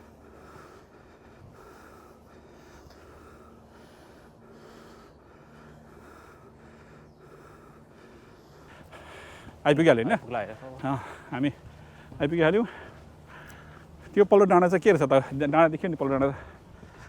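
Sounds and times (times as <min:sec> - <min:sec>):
person breathing rhythmically: 0:00.0 - 0:17.0.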